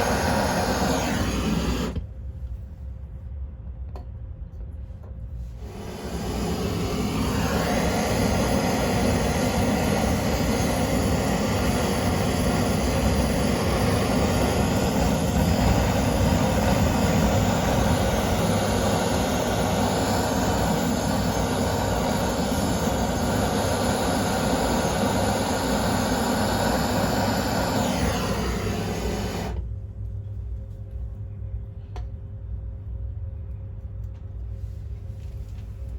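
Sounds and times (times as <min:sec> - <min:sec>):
flame rushing: 0:00.0 - 0:02.1, 0:05.5 - 0:29.7.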